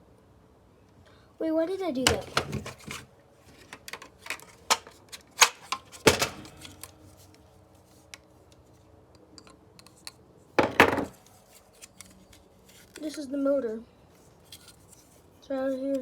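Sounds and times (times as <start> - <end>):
hard plastic parts clicking: 2.0 - 3.0, 3.6 - 7.0
tool being handled: 2.0 - 8.6, 14.3 - 15.3.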